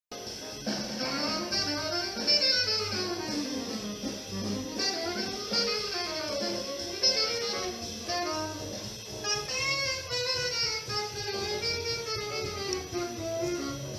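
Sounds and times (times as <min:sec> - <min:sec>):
instrumental jazz with saxophone: 0:00.2 - 0:13.9.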